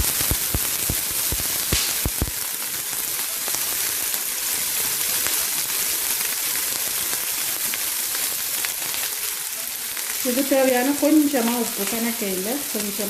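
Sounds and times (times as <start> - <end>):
onion sizzling in oil: 0.0 - 13.0.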